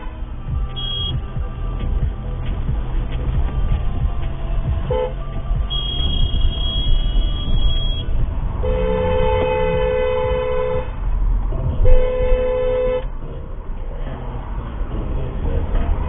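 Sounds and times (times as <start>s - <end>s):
car horn honking: 0.0s - 11.1s, 11.8s - 13.2s
road and engine rumble: 0.0s - 16.0s.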